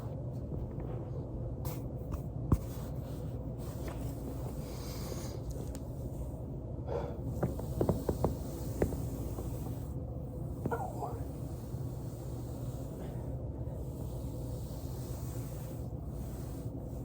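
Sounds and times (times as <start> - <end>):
steady low hum: 0.0 - 17.0
body rubbing on foam roller: 2.5 - 6.4, 7.3 - 17.0.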